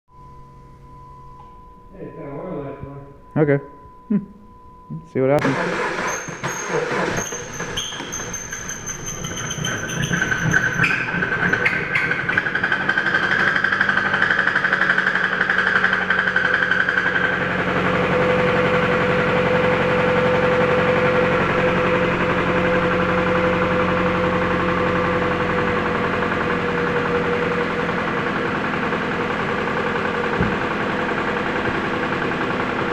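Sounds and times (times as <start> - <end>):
engine whine: 0.1 - 32.9
car engine with rod knock: 30.3 - 30.8.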